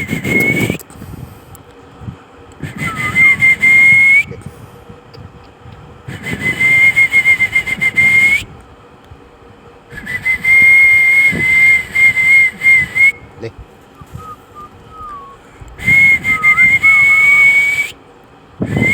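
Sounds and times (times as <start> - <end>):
high whistling tone: 0.0 - 0.8, 2.6 - 4.5, 6.1 - 8.6, 9.9 - 18.0, 18.6 - 18.9.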